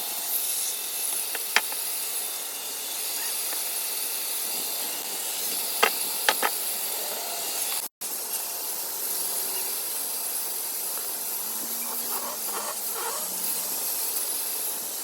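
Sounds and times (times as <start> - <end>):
woodworking machine cutting wood: 11.4 - 14.2.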